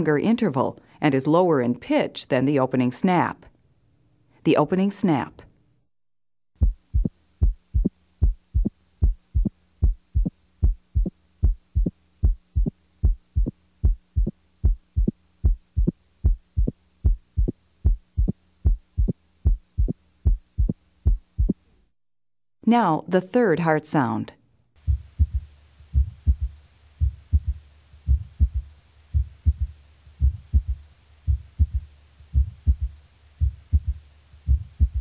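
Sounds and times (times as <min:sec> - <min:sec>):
faint steady hum: 0:00.0 - 0:05.9, 0:06.6 - 0:22.0, 0:22.6 - 0:35.0
heartbeat through stethoscope: 0:06.6 - 0:21.6, 0:24.8 - 0:35.0.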